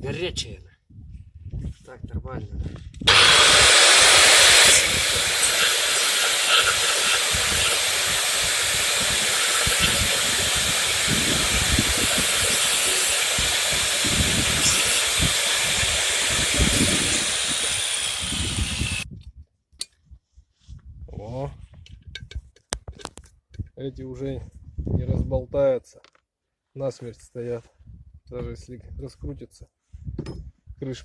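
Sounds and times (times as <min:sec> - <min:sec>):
loud hissing from metalwork: 0:03.1 - 0:19.0.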